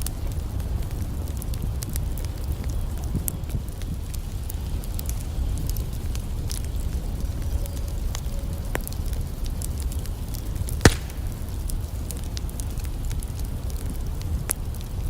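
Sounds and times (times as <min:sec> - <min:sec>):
campfire crackling: 0:00.0 - 0:15.0
loud sharp pop of fire: 0:10.8 - 0:11.8.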